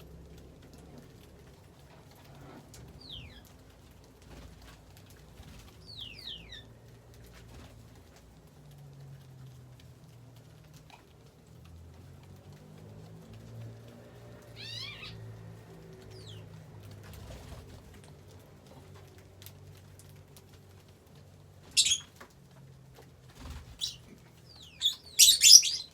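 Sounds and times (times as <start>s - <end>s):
birds chirping trill: 3.0s - 3.5s, 5.8s - 6.7s, 14.5s - 15.3s, 21.7s - 22.1s, 23.6s - 25.9s
birds squawking shrilly: 21.8s - 22.1s, 24.6s - 25.9s.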